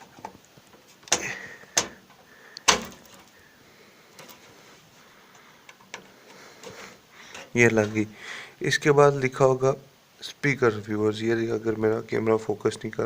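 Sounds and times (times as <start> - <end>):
faint handling: 4.0 - 8.2.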